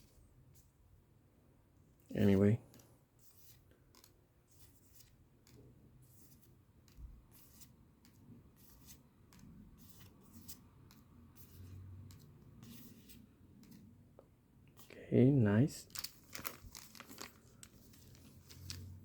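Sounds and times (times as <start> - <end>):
trading cards sliding and rustling: 2.7 - 13.9, 15.8 - 19.0.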